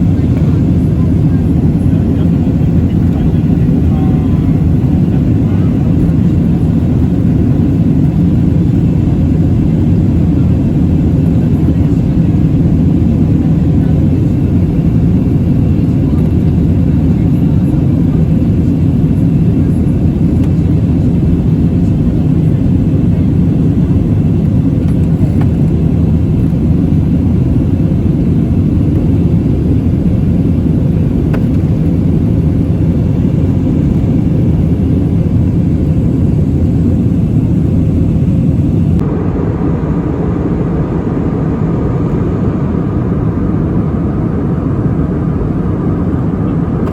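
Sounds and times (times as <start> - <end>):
jet engines rumbling in cabin: 0.0 - 46.9.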